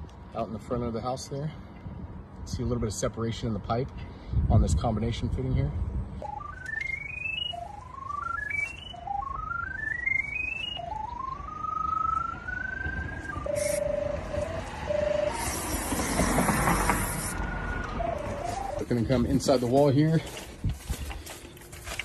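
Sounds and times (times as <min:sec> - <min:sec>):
electronic beeps stepping up: 0:06.2 - 0:19.0
held high electronic tone: 0:06.2 - 0:19.2
hiss: 0:15.3 - 0:17.4.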